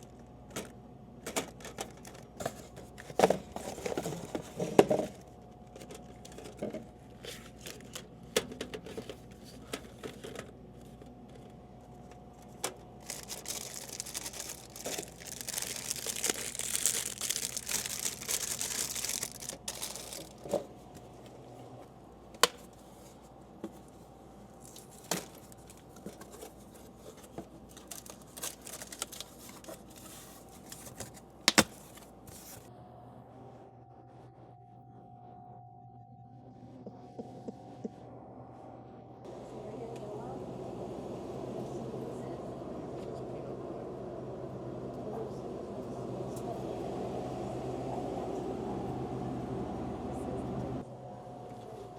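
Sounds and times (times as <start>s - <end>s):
faint steady hum: 0.0s - 51.9s
plastic packaging crinkling and tearing: 12.4s - 20.6s, 24.6s - 32.7s.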